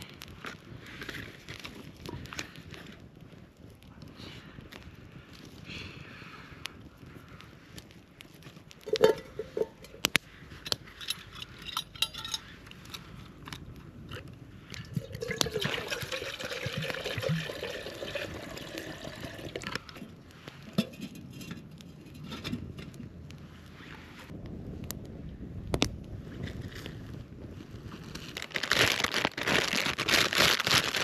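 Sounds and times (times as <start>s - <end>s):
clinks and knocks: 8.8s - 13.0s, 20.7s - 22.9s
liquid pouring into container: 14.8s - 19.7s.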